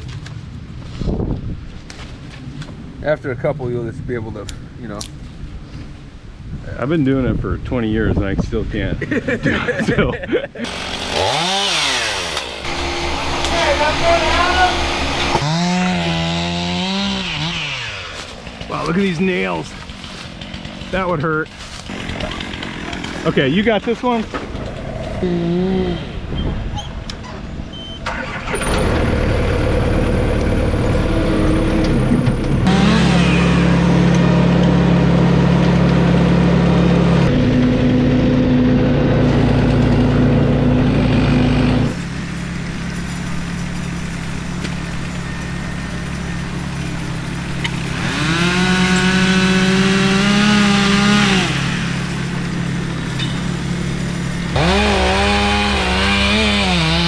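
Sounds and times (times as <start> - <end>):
chainsaw revving: 10.6 - 25.9, 32.6 - 57.0.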